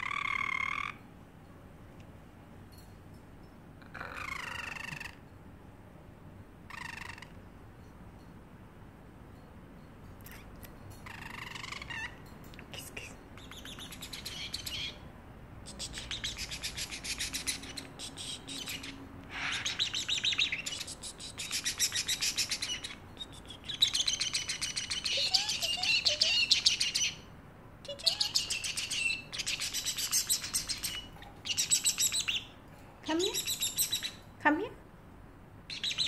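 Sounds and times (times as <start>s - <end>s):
parrotlet chirping: 0.0s - 1.0s, 3.8s - 5.2s, 6.7s - 7.4s, 10.2s - 12.3s, 13.0s - 34.4s, 35.6s - 36.0s.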